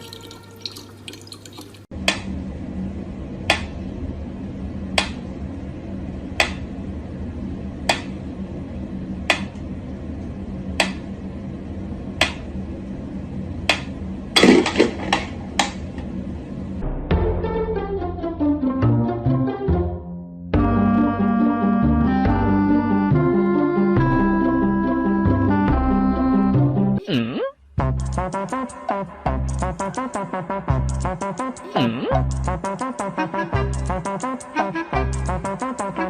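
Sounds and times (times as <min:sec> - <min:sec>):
water dripping: 0:00.0 - 0:01.9
low hum: 0:01.8 - 0:17.6.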